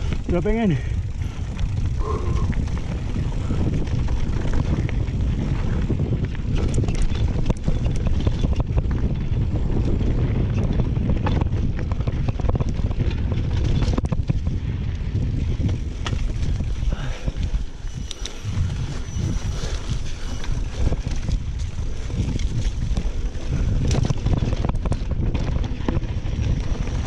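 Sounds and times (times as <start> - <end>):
bike clicks and rattles: 0.0 - 27.0
wind buffeting microphone: 0.0 - 27.0.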